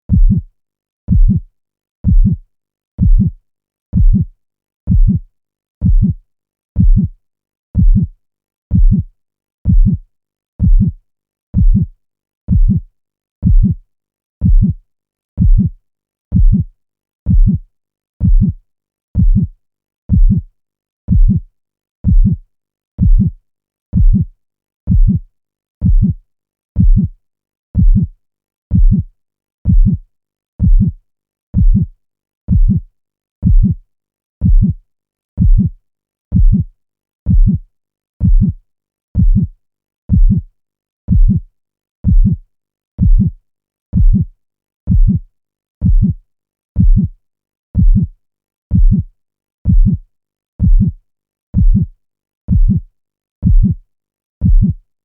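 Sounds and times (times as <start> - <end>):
heartbeat thumps: 0.1 - 0.4, 1.1 - 1.4, 2.0 - 2.4, 3.0 - 3.4, 4.0 - 4.3, 4.9 - 5.2, 5.8 - 6.2, 6.8 - 7.1, 7.8 - 8.1, 8.7 - 9.1, 9.7 - 10.0, 10.6 - 11.0, 11.6 - 11.9, 12.5 - 12.8, 13.4 - 13.8, 14.4 - 14.8, 15.4 - 15.7, 16.3 - 16.7, 17.3 - 17.6, 18.2 - 18.6, 19.2 - 19.5, 20.1 - 20.4, 21.1 - 21.4, 22.0 - 22.4, 23.0 - 23.3, 24.0 - 24.2, 24.9 - 25.2, 25.8 - 26.2, 26.8 - 27.1, 27.8 - 28.1, 28.7 - 29.1, 29.7 - 30.0, 30.6 - 31.0, 31.6 - 31.9, 32.5 - 32.8, 33.4 - 33.8, 34.4 - 34.8, 35.4 - 35.7, 36.3 - 36.6, 37.3 - 37.6, 38.2 - 38.6, 39.2 - 39.5, 40.1 - 40.4, 41.1 - 41.4, 42.0 - 42.4, 43.0 - 43.3, 44.0 - 44.2, 44.9 - 45.2, 45.8 - 46.1, 46.8 - 47.1, 47.8 - 48.1, 48.7 - 49.0, 49.7 - 50.0, 50.6 - 51.0, 51.6 - 51.8, 52.5 - 52.8, 53.4 - 53.8, 54.4 - 54.7.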